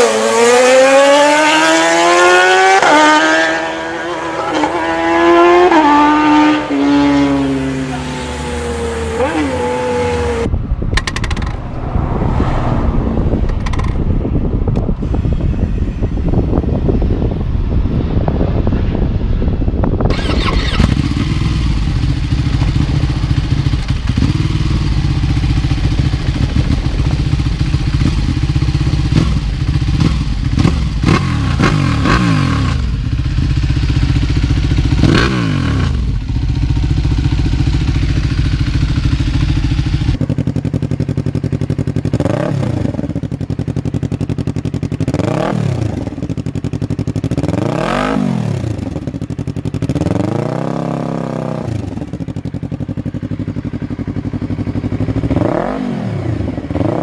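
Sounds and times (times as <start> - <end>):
motorcycle throttle blips: 9.1 - 11.8, 13.3 - 17.2, 20.1 - 50.3
motorcycle engine idling: 20.1 - 31.0, 32.8 - 35.1, 36.0 - 42.2, 42.9 - 45.2, 46.0 - 47.5, 48.9 - 50.0, 51.9 - 55.4.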